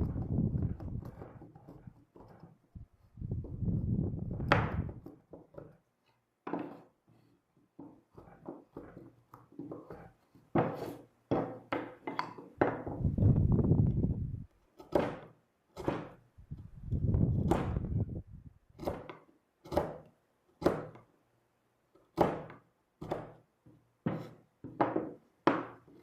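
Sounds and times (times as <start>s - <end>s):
irregular knocks and thuds: 3.3s - 5.8s, 7.8s - 13.6s, 23.0s - 25.9s.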